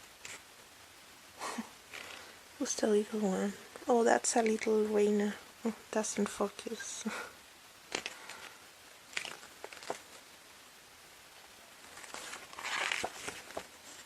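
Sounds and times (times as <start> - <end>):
page turning rustle: 1.9 - 2.3, 7.9 - 10.2, 11.8 - 14.0.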